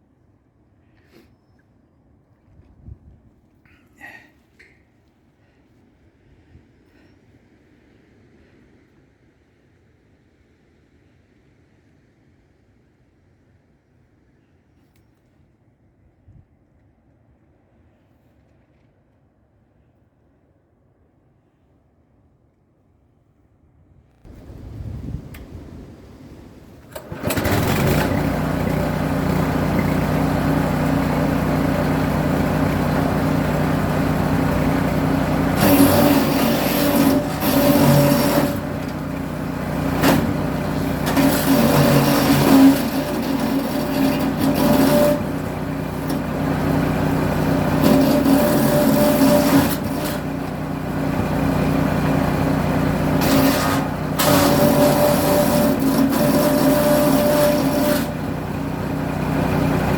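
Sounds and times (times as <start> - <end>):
wood chipper engine running: 25.7 - 59.9.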